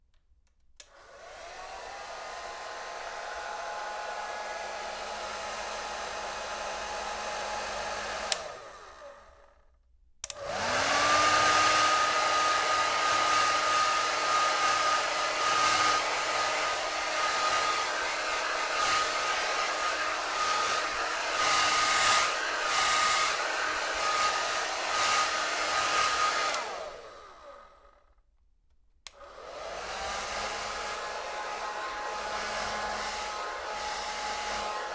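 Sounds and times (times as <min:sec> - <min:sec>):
hair dryer switch click: 0:00.5 - 0:01.7, 0:08.2 - 0:09.1, 0:10.2 - 0:11.8, 0:26.2 - 0:27.2, 0:29.0 - 0:29.9
hair dryer running: 0:00.8 - 0:28.1, 0:29.1 - 0:34.9.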